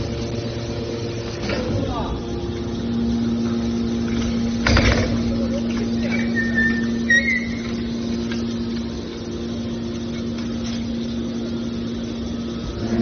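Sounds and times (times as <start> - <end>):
car baler mechanical hum: 0.0 - 13.0
high squeal: 6.0 - 8.0.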